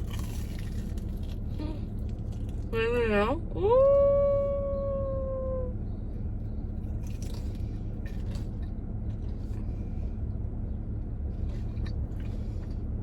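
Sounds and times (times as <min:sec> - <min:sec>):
chewing with crunches: 0:00.0 - 0:02.8, 0:06.4 - 0:13.0
low hum inside car: 0:00.0 - 0:13.0.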